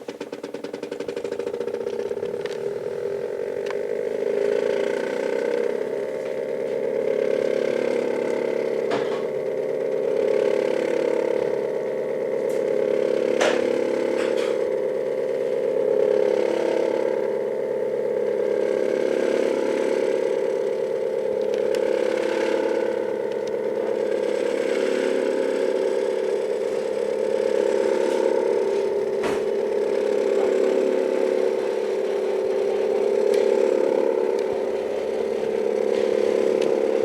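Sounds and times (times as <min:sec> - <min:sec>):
sharp clicks: 0:00.0 - 0:03.9
stepper motor hum: 0:00.0 - 0:37.0.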